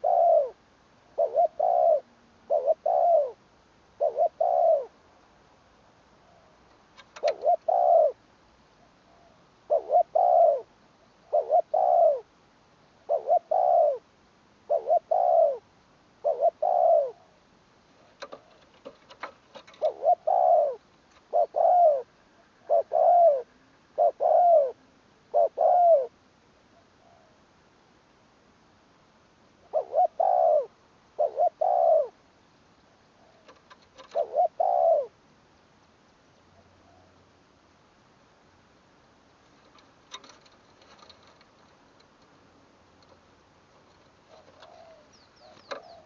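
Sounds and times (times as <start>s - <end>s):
dove cooing: 0.0s - 3.4s, 4.0s - 5.0s, 6.2s - 8.2s, 8.8s - 12.3s, 13.0s - 27.4s, 29.6s - 32.2s, 33.2s - 35.2s, 36.5s - 37.2s, 39.5s - 41.8s, 43.1s - 46.0s.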